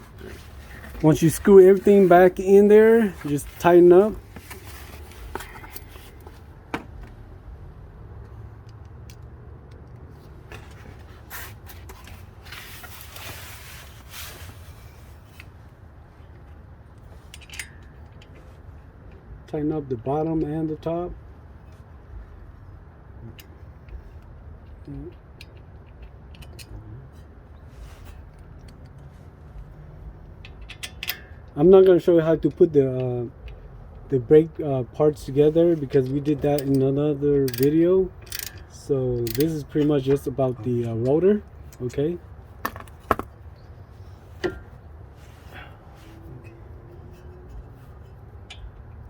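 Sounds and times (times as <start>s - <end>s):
low steady hum: 0.0s - 49.0s
hand tools clicking on metal: 37.4s - 39.9s.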